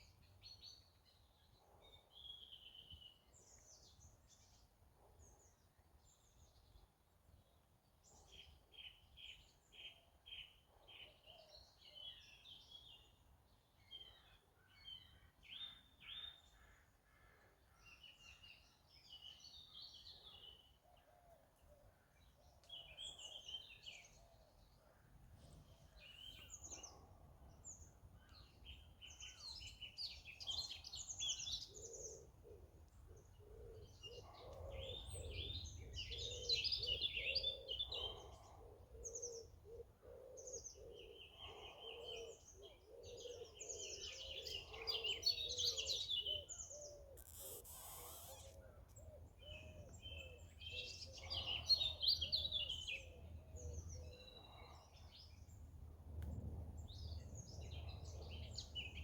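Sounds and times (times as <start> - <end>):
songbirds warbling: 25.4 - 55.8, 56.8 - 59.0.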